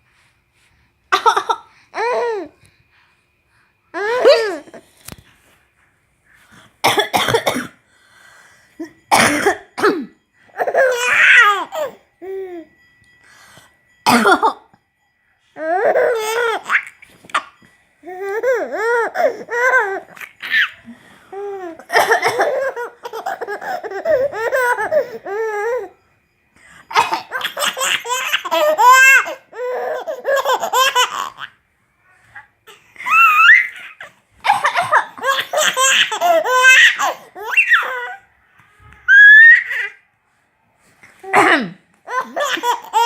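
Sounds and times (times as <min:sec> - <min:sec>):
woman coughing: 0:06.8 - 0:07.8, 0:09.1 - 0:10.2, 0:14.1 - 0:14.7, 0:21.9 - 0:22.6, 0:34.4 - 0:35.2, 0:41.3 - 0:41.8
baby laughing: 0:21.8 - 0:25.9, 0:26.9 - 0:31.5, 0:33.0 - 0:38.2, 0:42.1 - 0:43.0.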